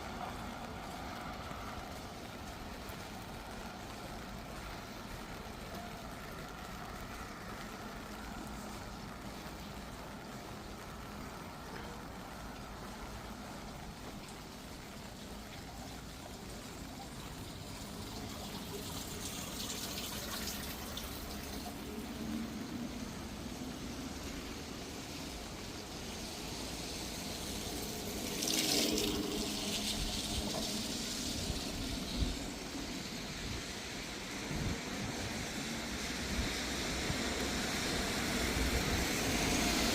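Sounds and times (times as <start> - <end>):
rain on wet street: 0.0 - 39.9.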